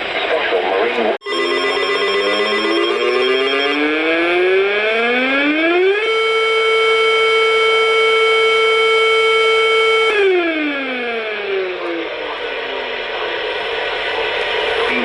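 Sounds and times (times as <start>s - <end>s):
civil defense siren wailing: 2.3s - 12.1s.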